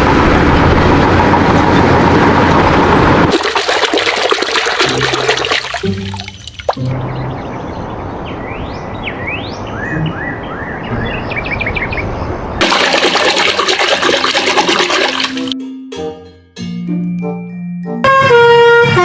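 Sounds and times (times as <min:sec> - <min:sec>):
water running: 0:03.3 - 0:06.8, 0:12.6 - 0:15.6.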